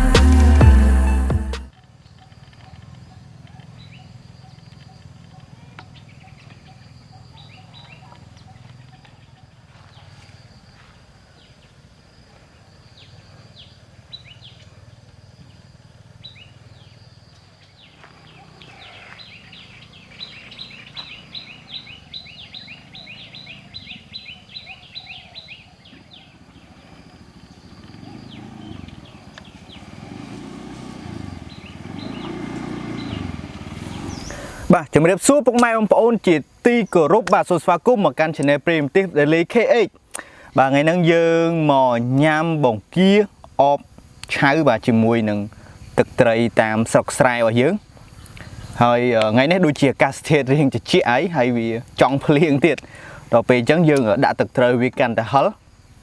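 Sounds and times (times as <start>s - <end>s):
rapid high chirps: 0.0s - 1.7s
birds chirping: 0.0s - 11.9s, 12.8s - 34.7s
outdoor ambience: 0.0s - 56.0s.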